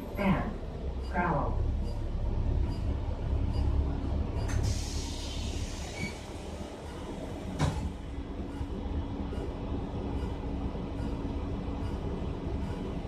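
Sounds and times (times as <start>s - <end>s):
bus interior rumble: 0.0s - 13.0s.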